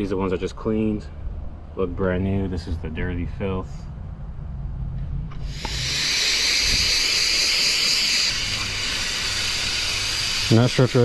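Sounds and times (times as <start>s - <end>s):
garden hose spraying water: 5.4s - 11.0s.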